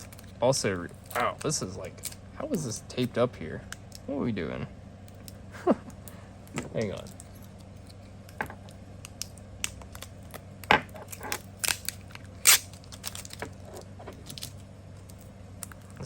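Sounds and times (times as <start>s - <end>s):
packing tape clicks and rustles: 6.8s - 16.0s
tape ripping: 11.0s - 13.5s.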